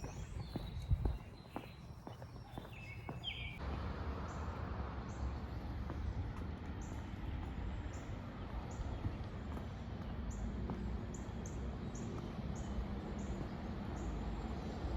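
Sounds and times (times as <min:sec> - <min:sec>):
bird chirp: 0:00.0 - 0:03.6
steady low rumble: 0:03.4 - 0:14.4.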